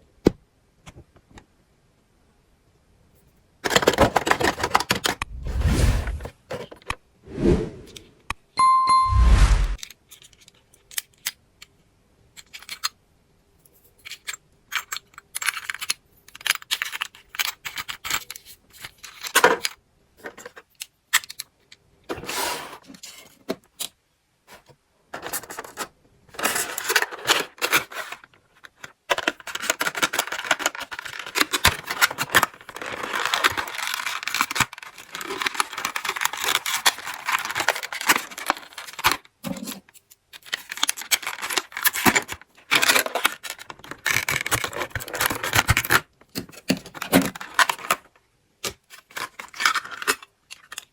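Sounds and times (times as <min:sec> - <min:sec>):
plastic toys clicking: 0:14.0 - 0:19.2
packaging crinkling and tearing: 0:29.2 - 0:39.8, 0:40.4 - 0:48.1, 0:48.9 - 0:50.9.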